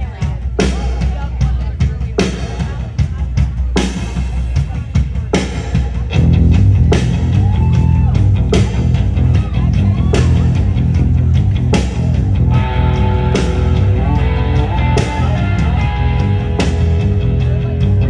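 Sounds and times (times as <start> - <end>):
rock band playing: 0.0 - 18.0
electric guitar lines: 10.3 - 18.0.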